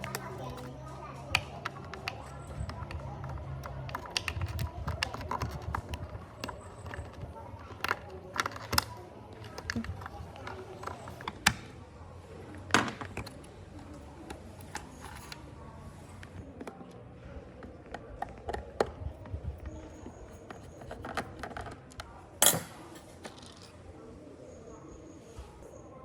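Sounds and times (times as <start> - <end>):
small parts clicking and knocking: 0.0 - 11.7.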